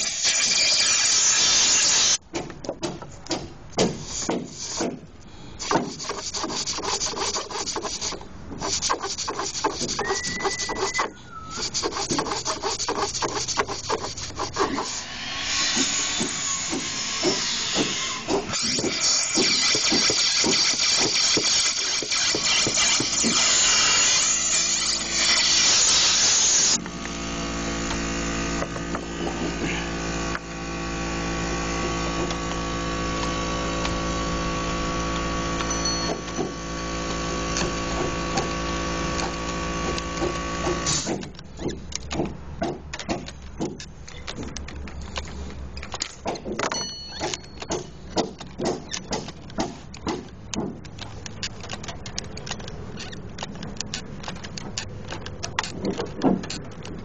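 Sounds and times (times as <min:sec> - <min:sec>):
tools clicking and knocking: 0:02.3 - 0:06.2, 0:39.2 - 0:57.0
small engine running: 0:18.6 - 0:41.0.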